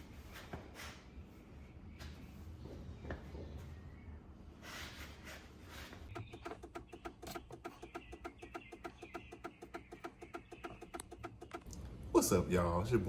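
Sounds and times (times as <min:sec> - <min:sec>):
turn signal flasher clicking: 0:06.1 - 0:11.8.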